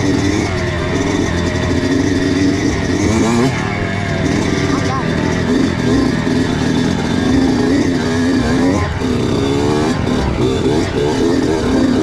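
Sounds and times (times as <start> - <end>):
motorbike engine revving: 0.0 - 12.0.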